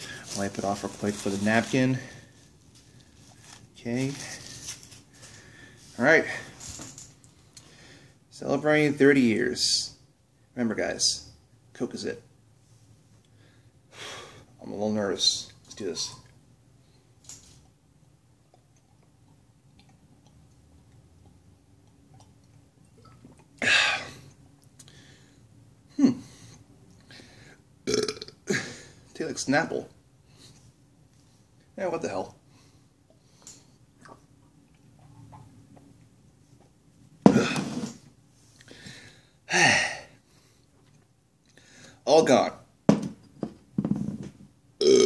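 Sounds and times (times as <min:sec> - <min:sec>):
person swallowing: 0:27.9 - 0:28.4.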